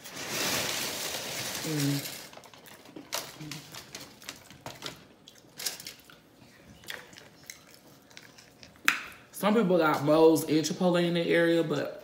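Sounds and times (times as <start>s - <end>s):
person chewing food: 2.5s - 9.3s.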